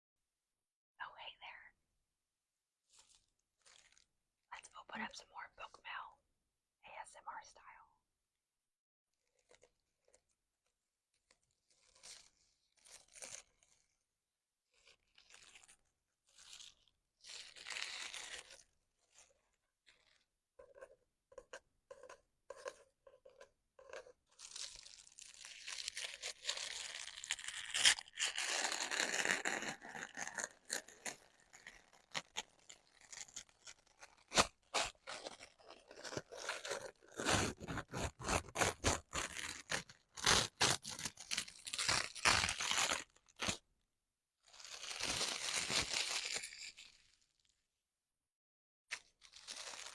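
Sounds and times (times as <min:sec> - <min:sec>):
paper tearing and crinkling: 0:24.4 - 0:43.6, 0:44.6 - 0:47.2, 0:48.9 - 0:49.9
paper packaging rustling: 0:49.2 - 0:49.9.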